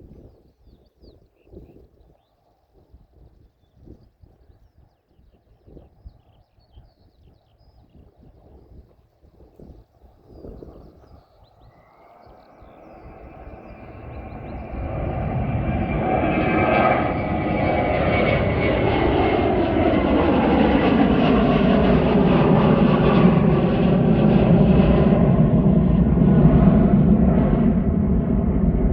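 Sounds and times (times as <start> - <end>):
jet engines whining at high thrust: 12.3 - 28.9.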